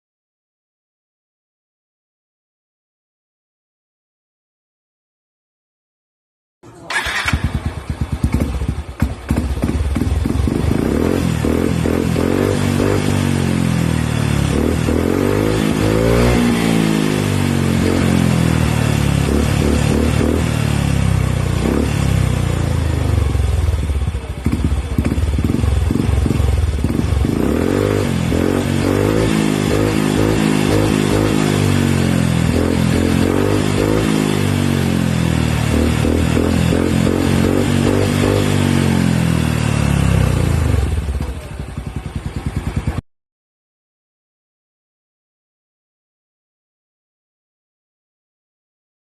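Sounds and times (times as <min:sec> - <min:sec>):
scooter engine revving and idling: 0:06.8 - 0:43.0.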